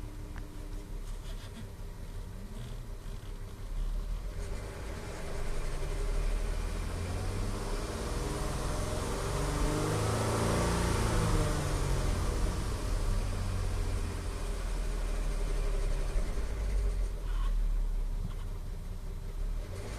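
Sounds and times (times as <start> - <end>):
car engine running: 0.0 - 19.9
clacking rattle from engine: 14.8 - 19.9.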